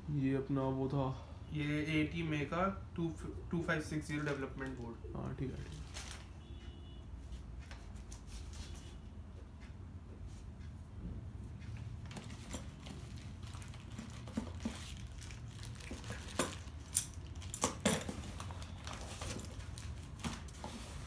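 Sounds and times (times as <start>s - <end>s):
small hard parts clinking: 12.1s - 20.3s.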